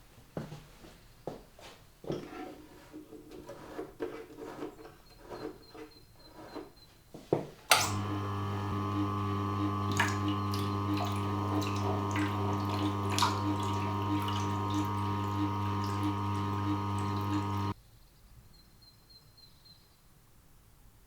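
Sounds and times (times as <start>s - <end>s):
sharpening machine motor hum: 7.7s - 17.8s.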